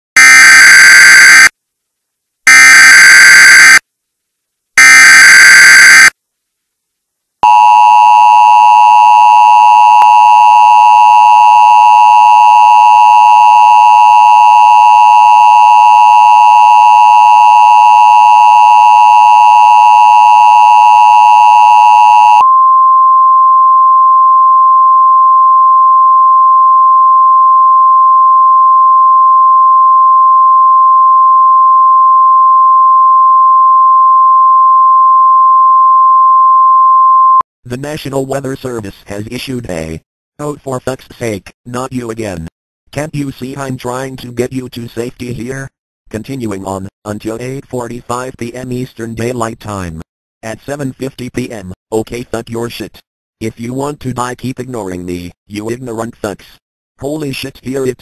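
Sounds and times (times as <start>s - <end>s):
harsh buzzy attention tone: 0.2s - 1.5s, 2.5s - 3.8s, 4.8s - 6.1s.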